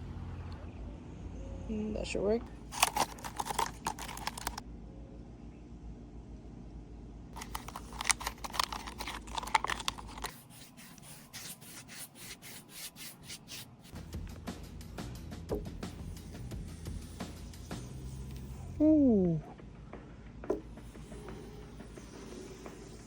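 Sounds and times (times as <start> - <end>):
rubbing and scraping strokes: 2.7 - 4.6, 7.4 - 14.1.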